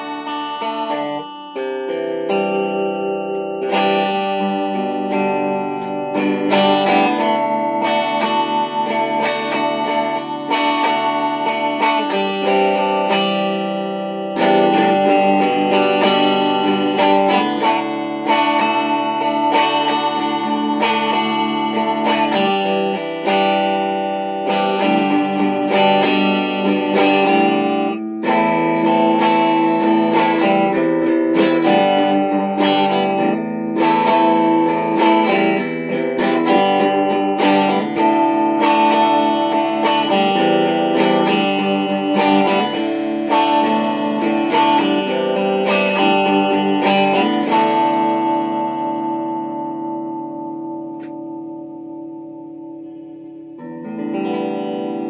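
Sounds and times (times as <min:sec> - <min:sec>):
electric guitar chords: 0:00.0 - 0:55.0.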